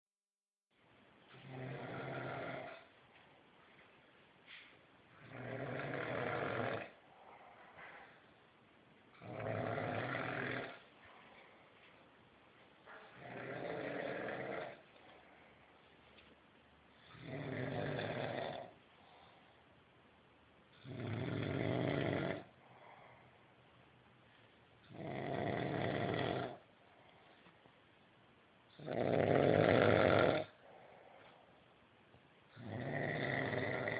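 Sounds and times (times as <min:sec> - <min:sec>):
person snoring: 0:01.4 - 0:02.9, 0:05.2 - 0:07.0, 0:09.2 - 0:10.9, 0:13.2 - 0:14.8, 0:17.0 - 0:18.8, 0:20.8 - 0:22.6, 0:24.9 - 0:26.6, 0:28.8 - 0:31.3, 0:32.6 - 0:33.9.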